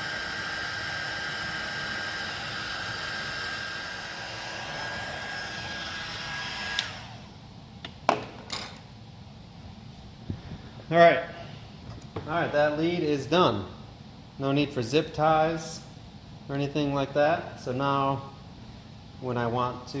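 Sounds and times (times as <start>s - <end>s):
heat gun blowing: 0.0s - 7.4s.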